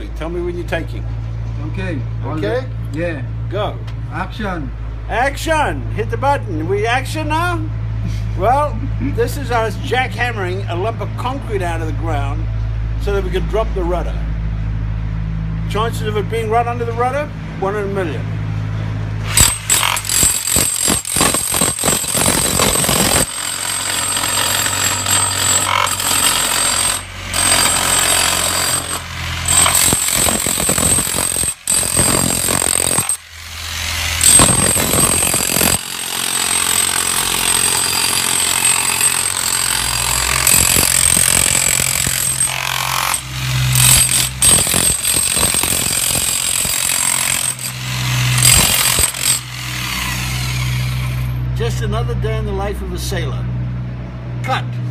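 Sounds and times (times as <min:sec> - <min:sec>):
jackhammer breaking concrete: 0:19.3 - 0:51.4.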